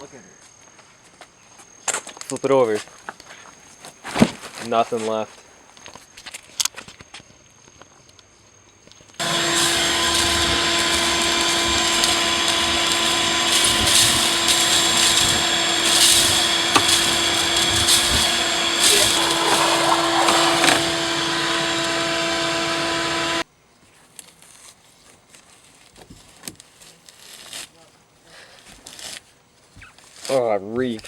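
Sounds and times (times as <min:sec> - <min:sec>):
vacuum cleaner running: 0:09.2 - 0:23.4.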